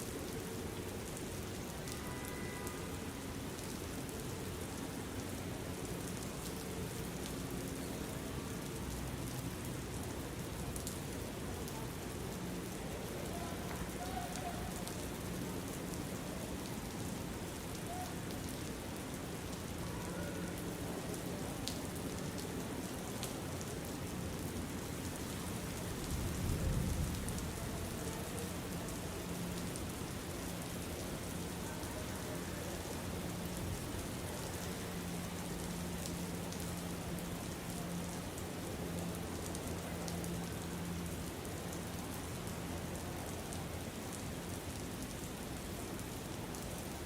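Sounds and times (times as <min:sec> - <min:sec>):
raindrop ticks: 0:10.5 - 0:16.1, 0:21.2 - 0:32.0, 0:32.8 - 0:44.2
rain hissing: 0:20.6 - 0:47.0.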